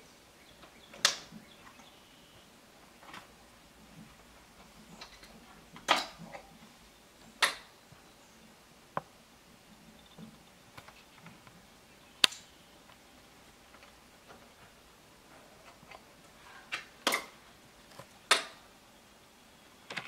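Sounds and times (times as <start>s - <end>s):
sharp clicks: 0.6s - 2.0s, 7.4s - 7.7s, 12.2s - 13.0s.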